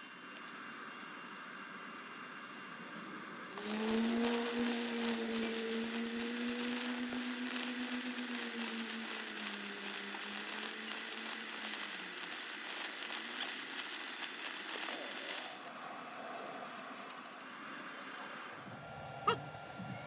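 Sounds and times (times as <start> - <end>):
welding arc crackling: 3.6 - 15.7.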